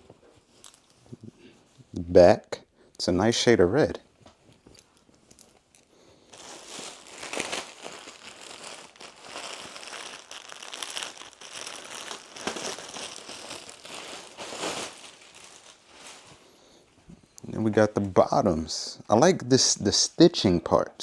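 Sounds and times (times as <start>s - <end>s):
packaging crinkling: 0.0s - 1.1s, 4.4s - 16.8s.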